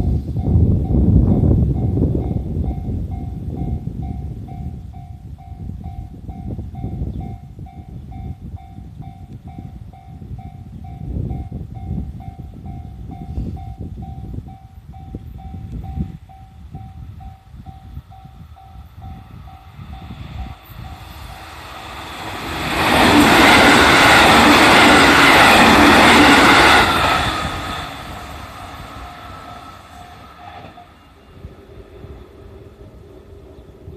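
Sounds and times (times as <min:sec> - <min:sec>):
level crossing warning bell: 0:00.0 - 0:21.5
electric train passing: 0:00.0 - 0:33.9.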